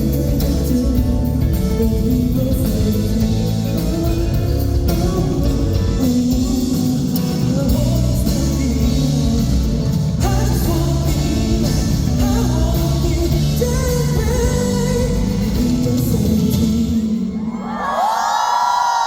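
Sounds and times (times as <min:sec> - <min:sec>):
live pop-rock band: 0:00.0 - 0:17.7
person singing: 0:00.0 - 0:18.2.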